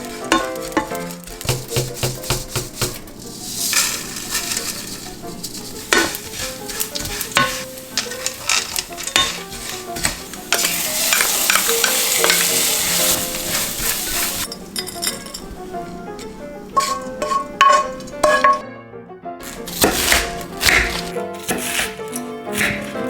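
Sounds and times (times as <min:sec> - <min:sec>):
food sizzling in a pan: 0:00.0 - 0:18.6
utensil scraping a pan: 0:00.0 - 0:18.6, 0:19.4 - 0:23.0.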